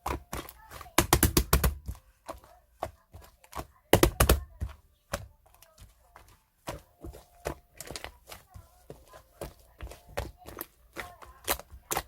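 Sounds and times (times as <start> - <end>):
rapid clicks and knocks: 0.0 - 2.0, 3.9 - 5.2.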